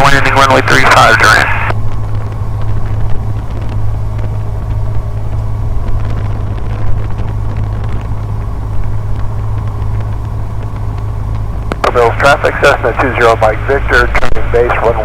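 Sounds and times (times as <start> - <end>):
airplane engine and propeller drone: 0.0 - 15.0.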